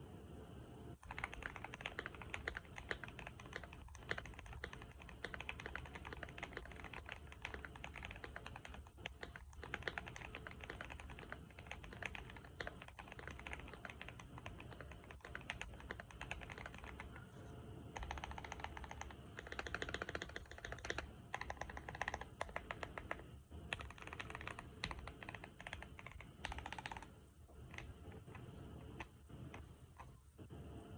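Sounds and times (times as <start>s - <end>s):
mechanical keyboard typing: 1.0s - 17.2s, 18.0s - 30.1s.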